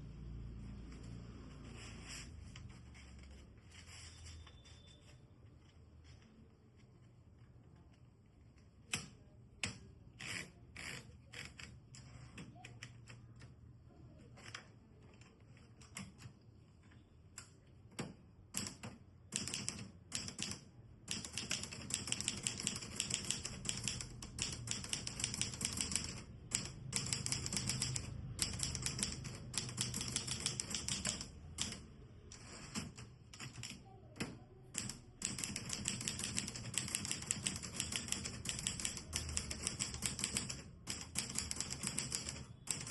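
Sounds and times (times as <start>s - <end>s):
manual typewriter typing: 18.5s - 31.9s, 32.6s - 33.8s, 34.7s - 42.9s.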